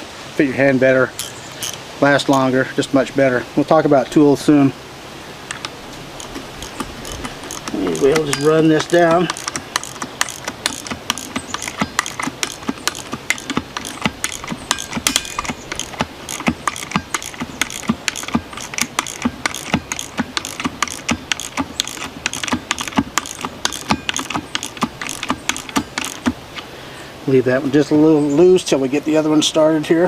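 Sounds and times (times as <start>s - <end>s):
socket ratchet clicking: 1.2s - 1.8s, 5.5s - 26.4s.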